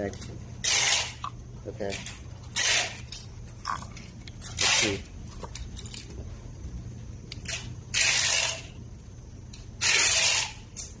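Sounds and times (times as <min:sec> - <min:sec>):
rasping ratchet-like bursts: 0:00.6 - 0:01.3, 0:02.0 - 0:03.8, 0:07.4 - 0:08.8, 0:09.8 - 0:11.0.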